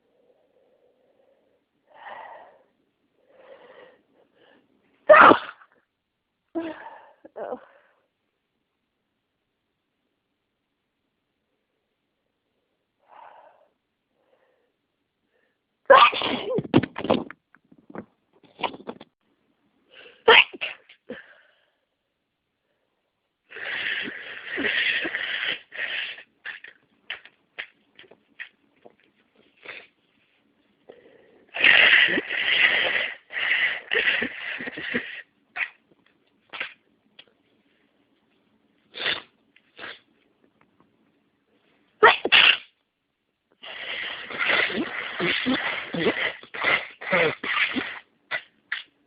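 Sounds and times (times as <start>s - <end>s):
person sneezing: 5.1s - 5.8s, 15.9s - 16.8s, 20.0s - 21.4s, 23.5s - 27.7s, 31.5s - 35.8s, 36.5s - 36.8s, 38.9s - 40.1s, 42.0s - 42.8s, 43.6s - 49.0s.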